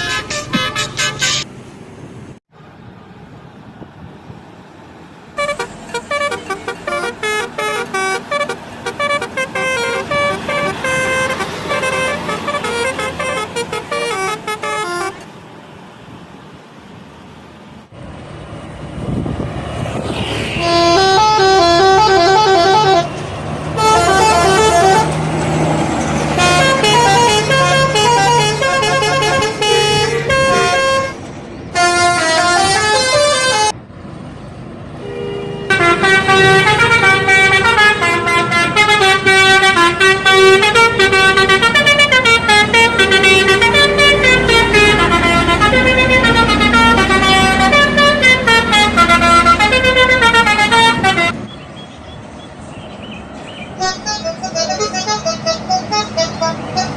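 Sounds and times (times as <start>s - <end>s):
bus engine running: 0.0s - 56.9s
multi-tone air horns playing tunes: 5.4s - 15.2s, 20.6s - 25.2s, 26.3s - 31.2s, 31.8s - 33.8s, 35.0s - 51.4s, 53.8s - 56.9s.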